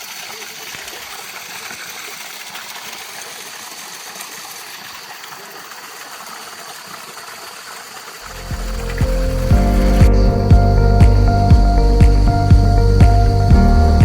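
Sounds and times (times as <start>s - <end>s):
flowing water rushing: 0.0s - 14.0s.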